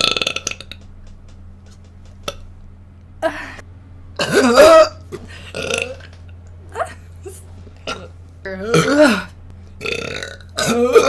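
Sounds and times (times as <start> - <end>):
person burping: 0.0 - 0.8, 4.2 - 6.1, 6.7 - 11.0.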